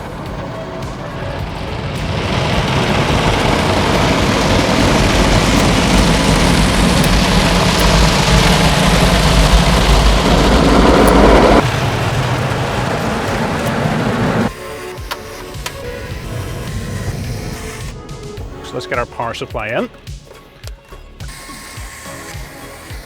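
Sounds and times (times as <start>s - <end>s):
car wash spray and machinery: 0.0s - 23.0s.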